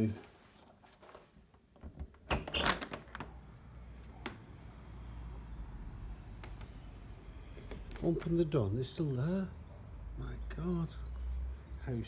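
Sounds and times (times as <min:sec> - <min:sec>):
door latch clicks and clatter: 0:01.7 - 0:03.6.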